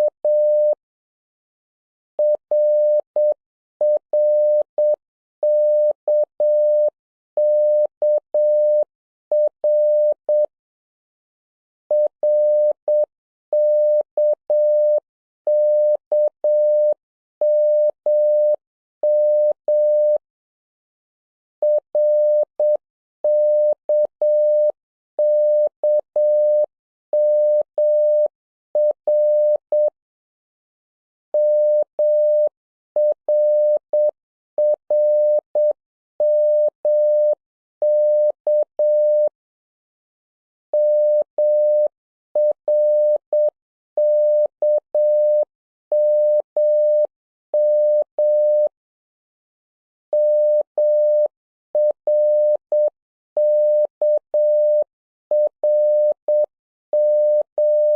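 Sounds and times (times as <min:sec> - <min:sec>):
morse code tone: 0:40.8 - 0:48.7, 0:50.1 - 0:57.9.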